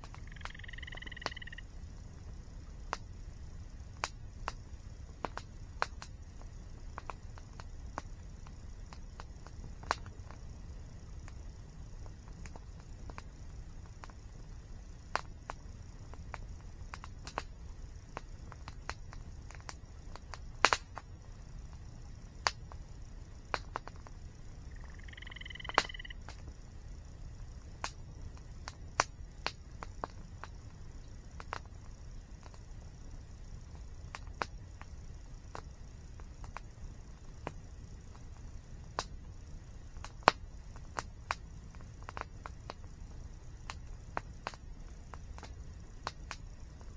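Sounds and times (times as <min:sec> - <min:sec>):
campfire crackling and popping: 0:00.0 - 0:46.9
bird call: 0:00.1 - 0:01.6, 0:24.7 - 0:26.2.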